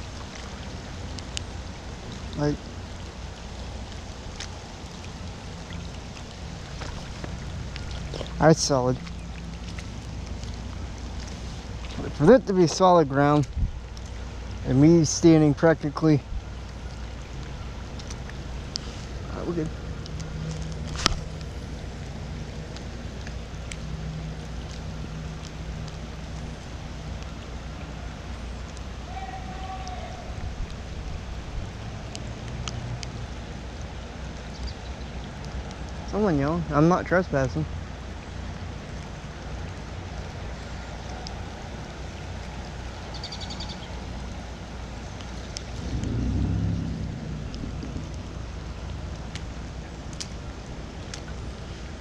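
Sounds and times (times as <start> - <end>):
raindrop ticks: 0.0 - 52.0
steady rain falling: 0.0 - 52.0
low rumble: 45.5 - 50.6.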